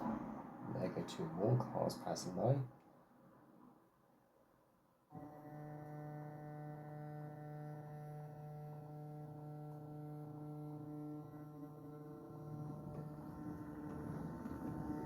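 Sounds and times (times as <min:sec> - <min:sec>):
model train motor humming: 0:05.2 - 0:15.0.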